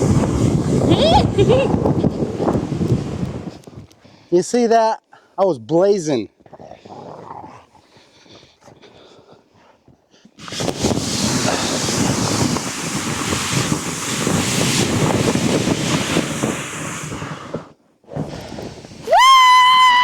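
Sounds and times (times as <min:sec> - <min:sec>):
sled scraping over snow: 0:00.0 - 0:03.8, 0:10.4 - 0:19.2
wind rushing over microphone: 0:00.0 - 0:04.0, 0:10.4 - 0:20.0.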